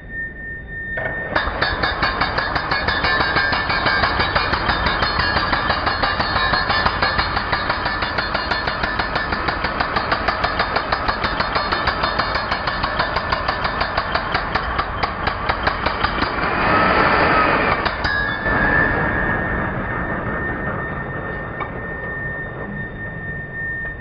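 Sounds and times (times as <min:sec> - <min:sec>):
electric concrete breaker hammering: 0:01.0 - 0:18.7.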